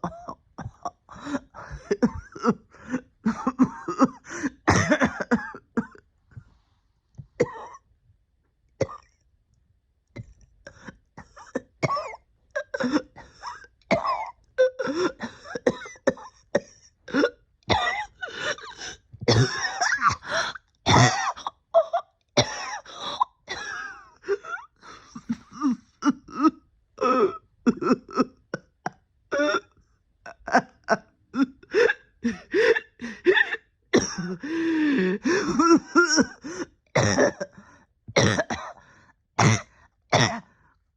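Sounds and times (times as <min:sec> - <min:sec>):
person coughing: 0:00.0 - 0:06.0, 0:07.4 - 0:07.8, 0:11.2 - 0:29.6, 0:30.3 - 0:34.6, 0:35.2 - 0:37.6, 0:38.2 - 0:38.8, 0:39.4 - 0:40.5
throat clearing: 0:25.2 - 0:26.5.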